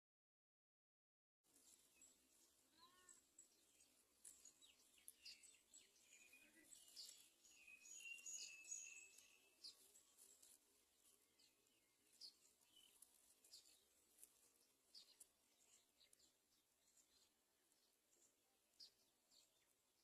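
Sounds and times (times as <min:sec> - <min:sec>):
high-pitched bird chirps: 0:06.1 - 0:09.6.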